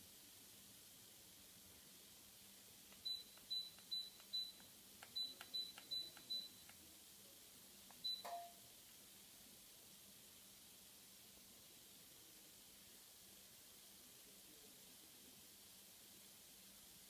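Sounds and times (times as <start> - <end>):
short high beeps: 5.2 - 6.6, 8.0 - 8.6
button clicks: 8.2 - 8.6.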